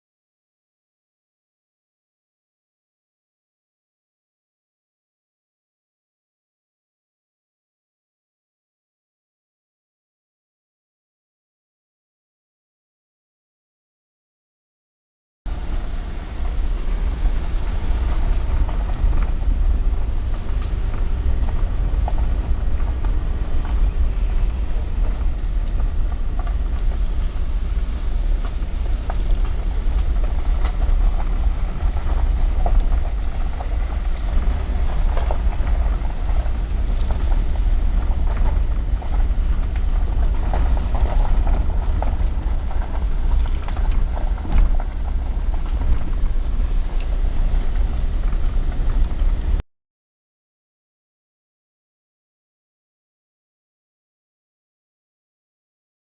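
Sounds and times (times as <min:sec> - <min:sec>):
truck engine and road rumble: 0:15.5 - 0:49.6.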